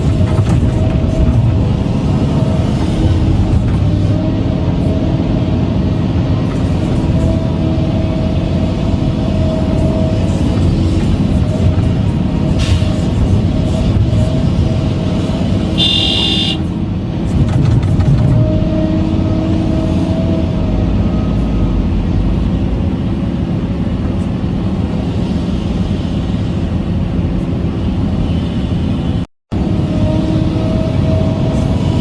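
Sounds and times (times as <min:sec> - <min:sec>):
short high horn toot: 0:15.8 - 0:16.7.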